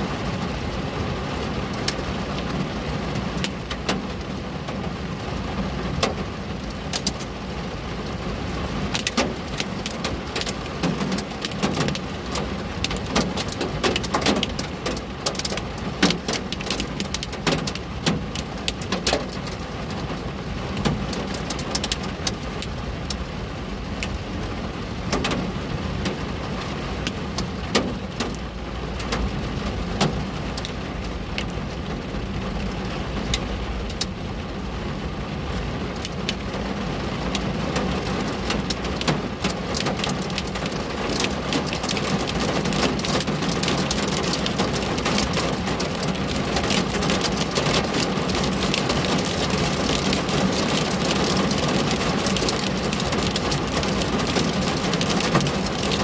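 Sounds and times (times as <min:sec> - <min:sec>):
low rumble of rain: 0:00.0 - 0:56.0
raindrops tapping on window: 0:01.6 - 0:07.5, 0:08.6 - 0:23.3, 0:25.0 - 0:34.9, 0:35.7 - 0:56.0.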